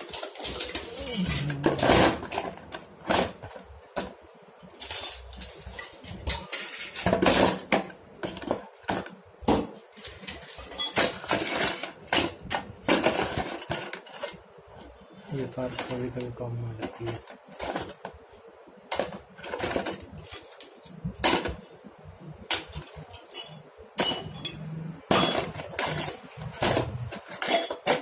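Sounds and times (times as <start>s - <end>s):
small metal tools clinking: 0.0s - 2.5s, 3.1s - 12.3s, 22.5s - 28.0s.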